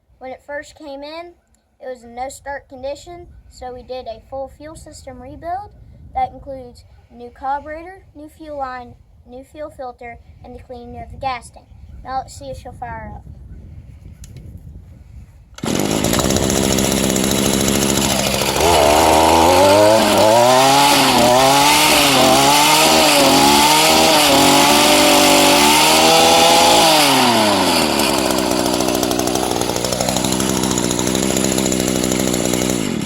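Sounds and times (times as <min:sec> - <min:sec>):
two-stroke edger engine revving: 0:15.6 - 0:33.0.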